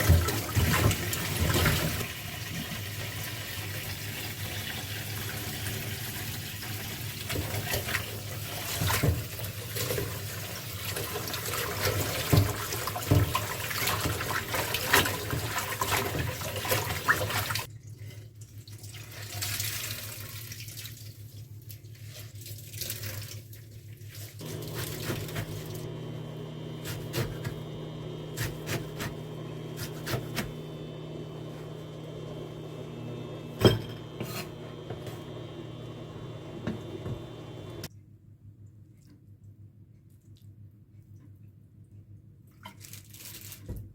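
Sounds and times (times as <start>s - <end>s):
running water: 0.0s - 17.7s, 24.3s - 28.5s.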